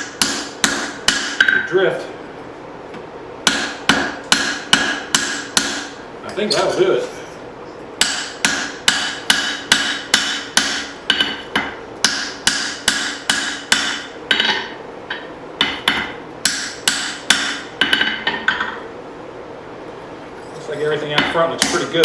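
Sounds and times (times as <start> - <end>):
hammer blows on anvil: 21.1 - 22.0.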